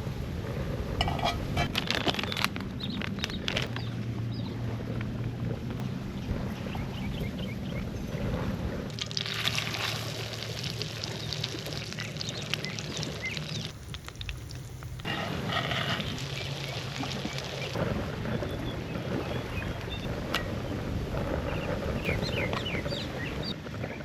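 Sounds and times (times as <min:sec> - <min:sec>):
fish sizzling in a pan: 0:09.0 - 0:17.8.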